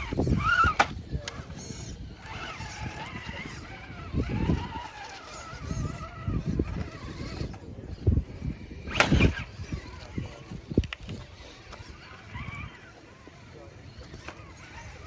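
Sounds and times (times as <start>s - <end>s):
toy truck knocks and scrapes: 0.0s - 7.7s, 8.9s - 13.2s
electric motor whining: 0.0s - 15.0s.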